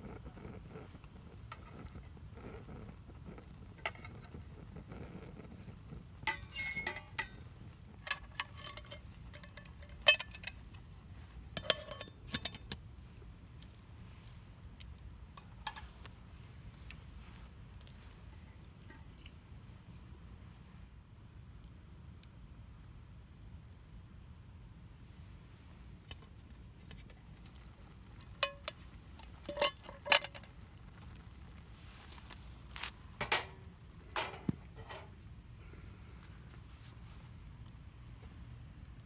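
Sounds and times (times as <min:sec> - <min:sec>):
utensils clinking on metal cookware: 0:06.3 - 0:07.4, 0:08.0 - 0:10.6, 0:11.6 - 0:12.7, 0:28.2 - 0:30.5, 0:33.2 - 0:35.1.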